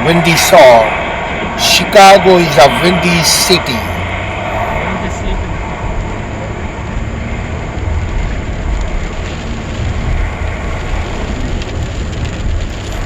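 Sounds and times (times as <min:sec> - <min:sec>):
heavy low rumble: 0:00.0 - 0:13.0
wind buffeting a driving car: 0:04.0 - 0:13.0.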